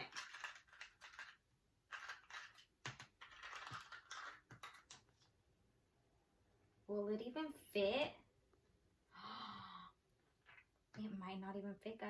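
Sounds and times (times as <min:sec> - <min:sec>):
ice cubes clicking and crunching: 0:00.0 - 0:04.9.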